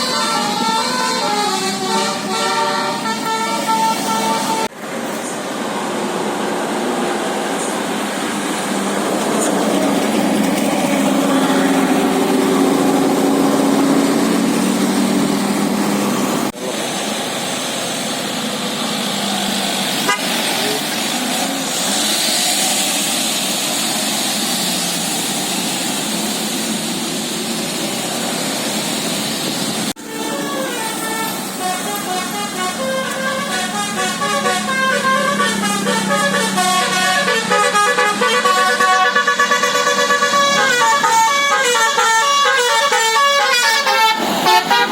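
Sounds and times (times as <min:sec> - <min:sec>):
musical bus air horn: 0:00.0 - 0:04.8, 0:20.0 - 0:20.6, 0:29.9 - 0:44.9
road traffic: 0:00.0 - 0:44.9.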